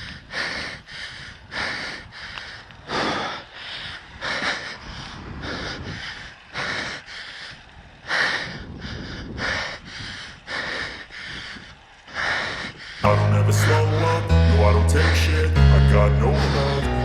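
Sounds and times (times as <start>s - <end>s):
person breathing hard: 0.0s - 17.0s
music: 13.0s - 17.0s.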